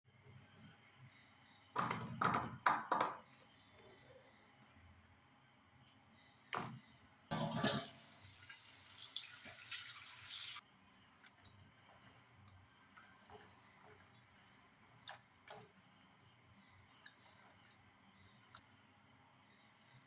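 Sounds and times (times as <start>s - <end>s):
kitchen tap running: 7.3s - 10.6s.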